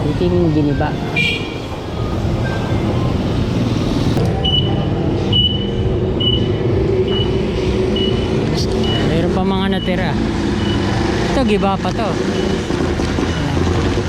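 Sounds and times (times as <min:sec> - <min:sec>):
road traffic rumble: 0:00.0 - 0:14.0
reversing alarm beeping: 0:04.3 - 0:11.6, 0:12.2 - 0:13.6.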